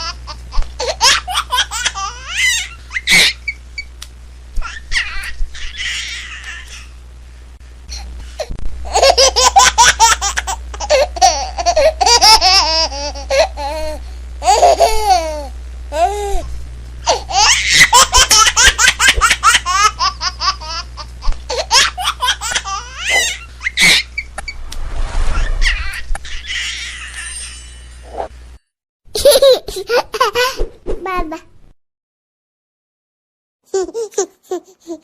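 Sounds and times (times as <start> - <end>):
baby giggling: 8.9 - 13.8, 14.4 - 15.5, 29.2 - 31.4, 33.7 - 35.0.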